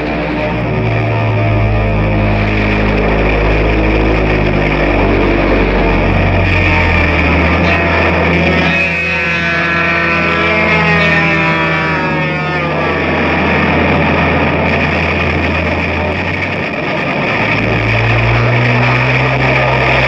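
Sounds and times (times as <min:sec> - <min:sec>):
psychedelic rock instrumental: 0:00.0 - 0:20.0.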